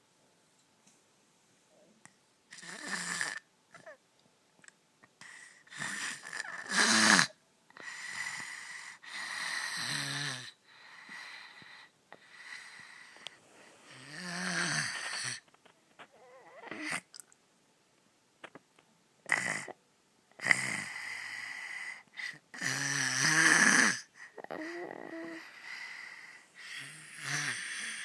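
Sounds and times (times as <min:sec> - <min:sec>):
person snoring: 0:02.5 - 0:04.0, 0:05.2 - 0:11.4, 0:12.2 - 0:15.4, 0:20.4 - 0:28.0.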